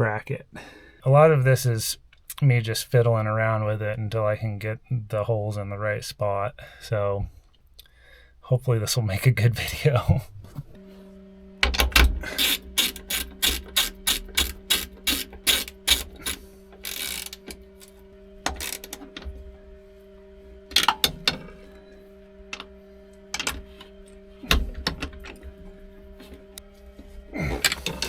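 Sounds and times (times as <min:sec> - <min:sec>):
steady low hum: 0:00.4 - 0:28.0
socket ratchet clicking: 0:12.3 - 0:17.6, 0:18.5 - 0:19.0.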